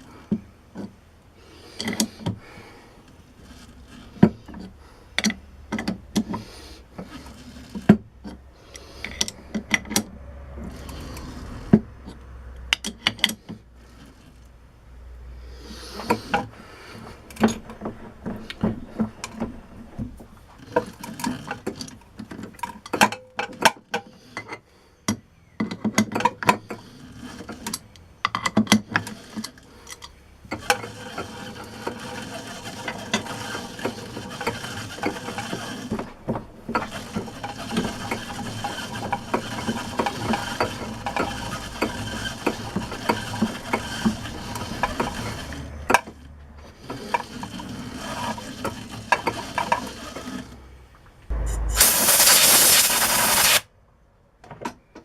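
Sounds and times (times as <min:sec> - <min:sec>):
metal lathe clattering: 0:36.7 - 0:45.6.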